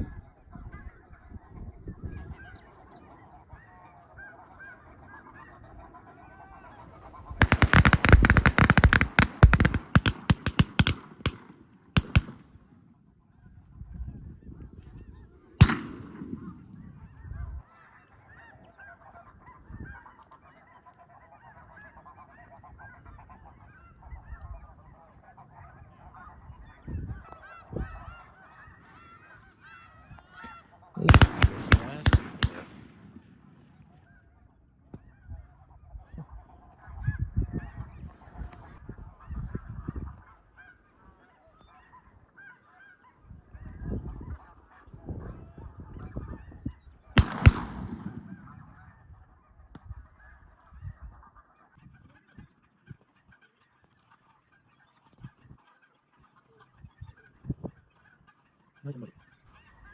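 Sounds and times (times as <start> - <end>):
geese honking: 2.4 - 12.4, 24.9 - 34.2, 40.1 - 45.0
loud sharp cracks: 7.4 - 12.7, 15.6 - 16.8, 31.0 - 33.9, 47.2 - 48.8.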